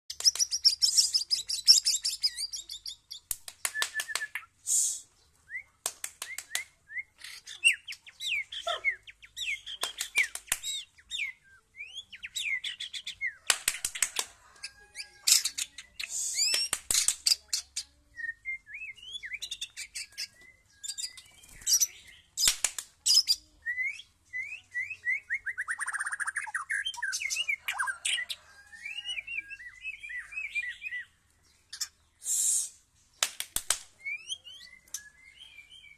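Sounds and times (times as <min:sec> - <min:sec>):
bird singing whistles and trills: 0:00.2 - 0:13.2, 0:18.1 - 0:22.1, 0:23.1 - 0:28.0, 0:28.6 - 0:31.1, 0:34.0 - 0:35.9.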